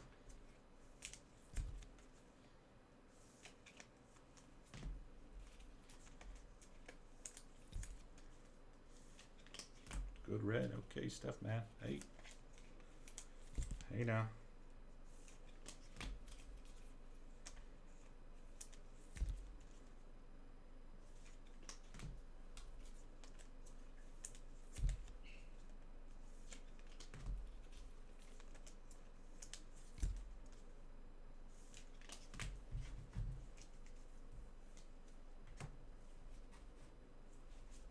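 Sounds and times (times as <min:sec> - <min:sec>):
cards clicking and rustling: 0:03.3 - 0:10.2, 0:11.8 - 0:14.2, 0:15.2 - 0:19.8, 0:21.2 - 0:25.4, 0:26.3 - 0:30.6, 0:31.6 - 0:34.0.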